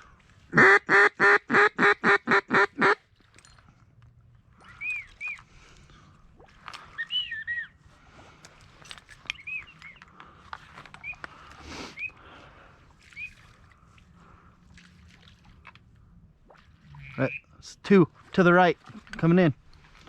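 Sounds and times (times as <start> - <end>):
whistled duck calls: 4.6 - 5.5, 6.9 - 7.8, 11.0 - 11.2, 11.9 - 12.2, 13.1 - 13.4, 16.9 - 17.6.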